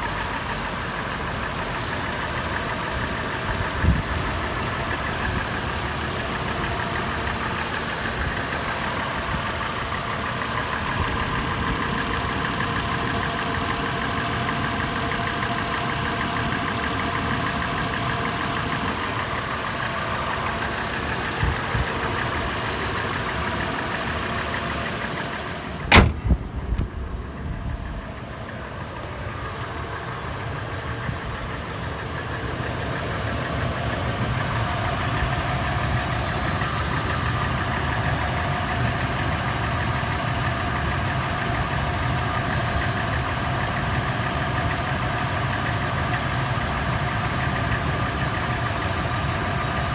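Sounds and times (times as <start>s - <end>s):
engine idling with clattering tapping: 0.0s - 49.9s
sharp engine knock: 25.9s - 27.1s.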